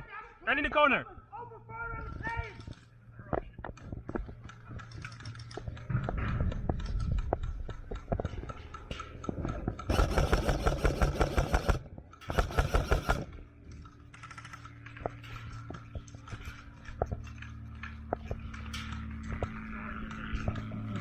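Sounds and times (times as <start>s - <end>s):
sharp clicks: 9.8s - 15.0s
airsoft gun full-auto bursts: 9.9s - 13.5s.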